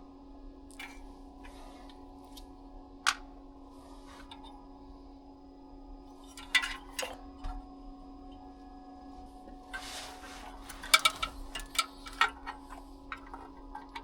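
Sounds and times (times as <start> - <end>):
steady low hum: 0.0 - 14.0
sharp clicks and knocks: 10.7 - 14.0.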